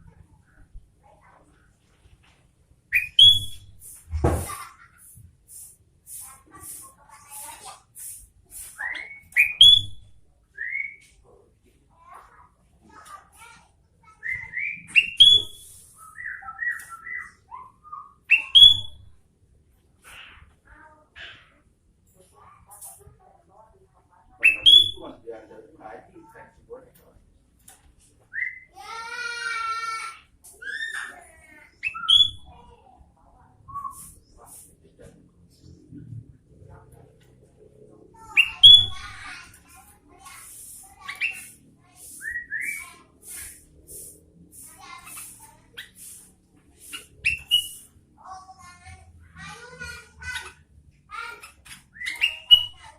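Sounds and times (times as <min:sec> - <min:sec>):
bird singing whistled notes: 0:02.9 - 0:03.8, 0:08.8 - 0:11.1, 0:14.2 - 0:19.2, 0:24.4 - 0:25.1, 0:31.8 - 0:32.5, 0:42.1 - 0:42.9, 0:47.2 - 0:47.9, 0:51.9 - 0:52.8.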